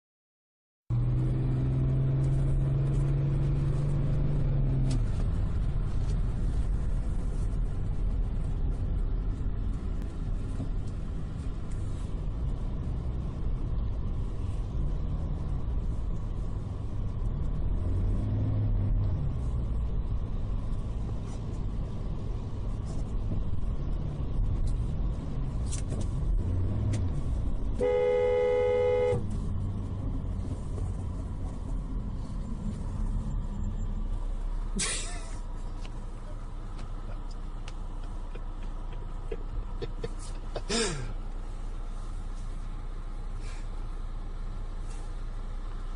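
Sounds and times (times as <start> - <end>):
street traffic: 0.9 - 45.9
vehicle horn blast: 27.8 - 29.3.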